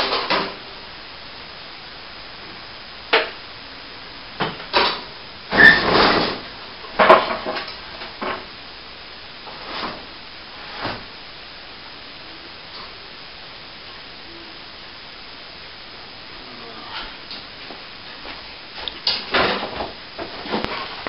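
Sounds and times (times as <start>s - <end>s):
brief high squeak: 5.6s - 5.9s.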